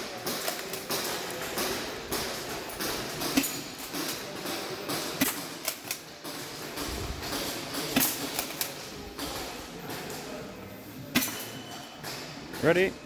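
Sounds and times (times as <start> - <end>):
pellets striking targets: 0.2 - 9.4.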